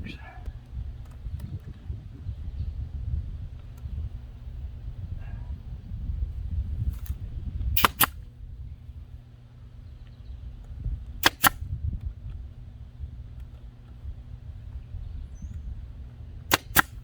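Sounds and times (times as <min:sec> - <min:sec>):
nail gun firing: 0:07.8 - 0:08.2, 0:11.2 - 0:11.7, 0:16.5 - 0:17.0.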